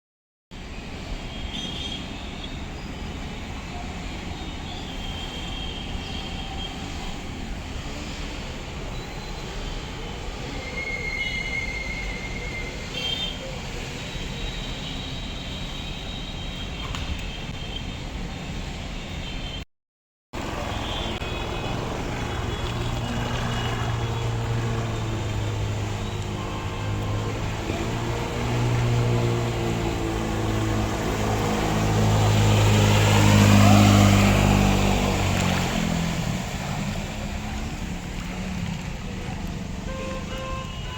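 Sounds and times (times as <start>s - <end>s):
road traffic rumble: 0.5s - 19.6s, 20.4s - 40.9s
vehicle engine humming: 20.4s - 40.9s.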